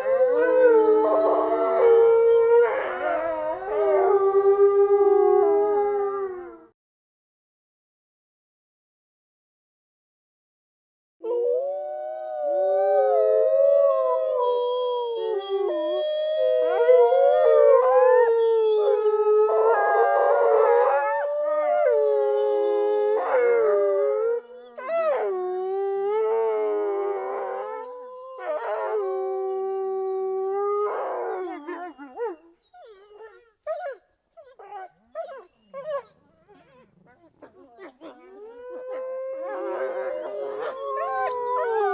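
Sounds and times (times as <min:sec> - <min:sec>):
wolves howling: 0:00.0 - 0:06.6, 0:11.2 - 0:41.9
wolves yipping: 0:31.2 - 0:41.9.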